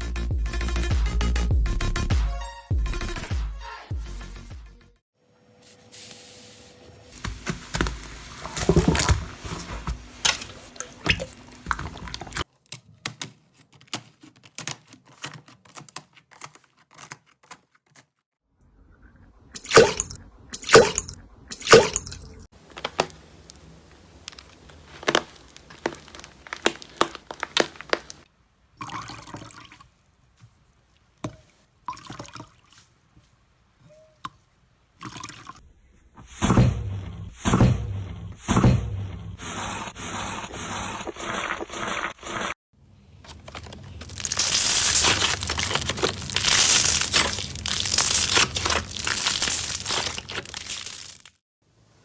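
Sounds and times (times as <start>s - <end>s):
slime squelching: 7.1s - 12.5s, 19.6s - 28.3s, 43.2s - 51.4s
loud slime pops: 24.3s - 28.2s, 44.1s - 51.3s.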